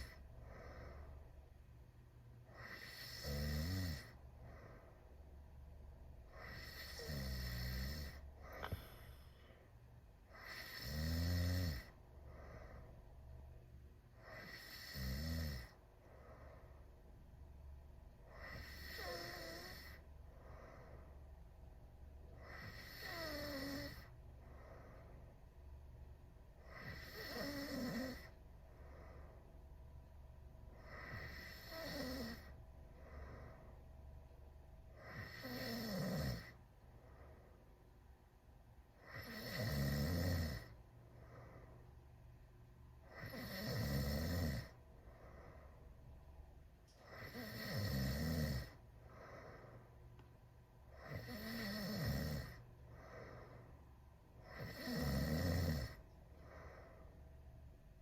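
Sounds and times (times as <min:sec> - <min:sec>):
quiet breathing: 0:00.0 - 0:58.0
person snoring: 0:02.5 - 0:04.2, 0:06.3 - 0:09.1, 0:10.3 - 0:12.8, 0:14.2 - 0:15.8, 0:18.3 - 0:20.8, 0:22.4 - 0:24.1, 0:26.6 - 0:28.4, 0:30.8 - 0:33.5, 0:35.0 - 0:36.6, 0:39.0 - 0:40.8, 0:43.1 - 0:44.8, 0:47.0 - 0:49.7, 0:51.0 - 0:53.6, 0:54.4 - 0:56.8.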